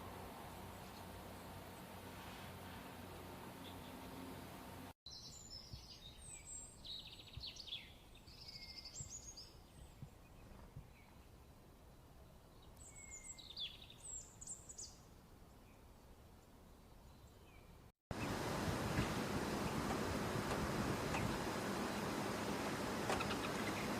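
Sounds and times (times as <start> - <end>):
songbird singing trills: 5.1 - 11.6, 12.2 - 15.0, 23.1 - 23.9.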